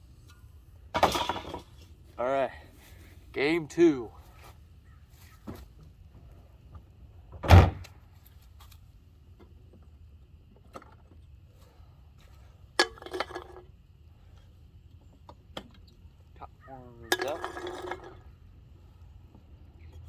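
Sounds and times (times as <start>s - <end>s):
cans clattering and ringing: 1.0s - 1.8s, 12.8s - 13.8s, 17.0s - 18.4s.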